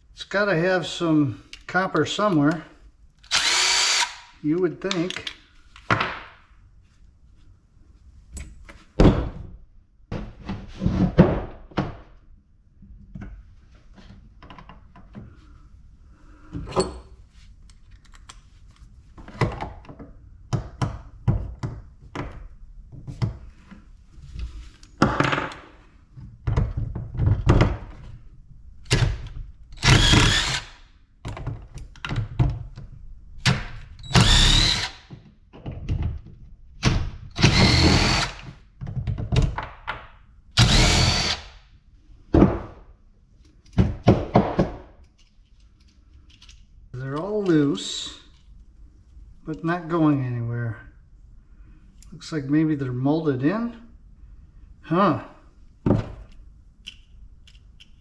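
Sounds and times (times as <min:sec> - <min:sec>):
power drill running: 0:03.3 - 0:04.3, 0:29.8 - 0:30.8, 0:34.0 - 0:35.1, 0:37.4 - 0:38.5, 0:40.6 - 0:41.6
tools and parts clunking: 0:16.6 - 0:17.2.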